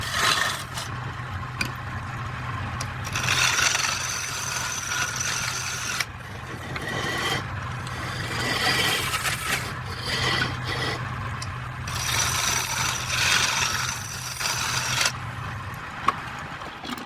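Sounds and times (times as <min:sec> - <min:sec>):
turning tool scraping wood: 0:00.0 - 0:01.0, 0:02.8 - 0:15.2
wood lathe humming: 0:00.0 - 0:16.0.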